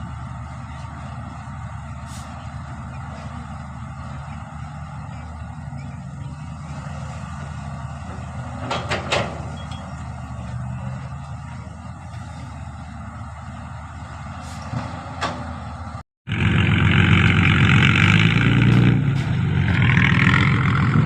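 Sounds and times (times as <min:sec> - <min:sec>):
diesel engine running: 0:00.0 - 0:21.0
metallic clanks: 0:08.5 - 0:10.3.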